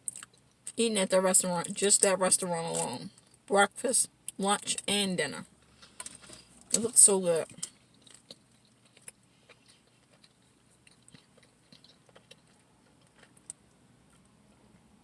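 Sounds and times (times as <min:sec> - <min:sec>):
faint chewing mouth clicks: 0:07.5 - 0:14.3.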